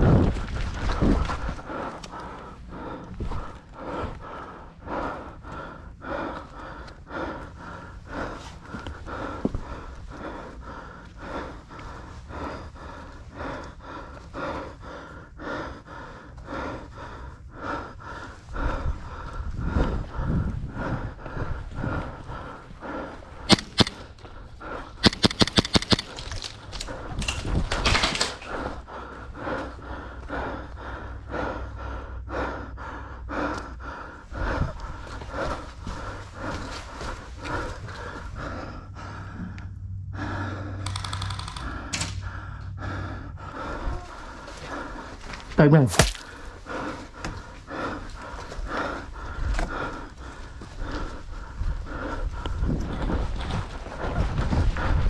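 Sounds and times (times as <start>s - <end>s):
heavy breathing: 1.4s - 27.6s, 45.9s - 52.6s
airsoft gunshots: 23.5s - 24.0s, 25.0s - 26.2s, 45.9s - 46.4s
rhythmic footsteps: 23.5s - 24.0s, 25.0s - 26.2s, 45.9s - 46.4s.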